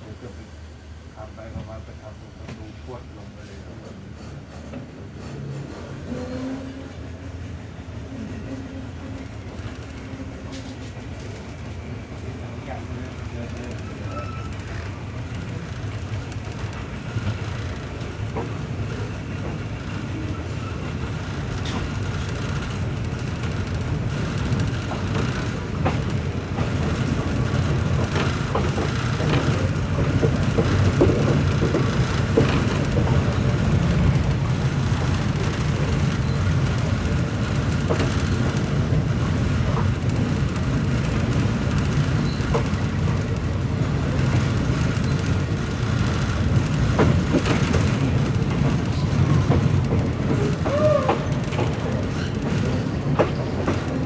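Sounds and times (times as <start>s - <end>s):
train rumbling on track: 0.0s - 54.0s
wheels clacking over rails: 13.2s - 54.0s.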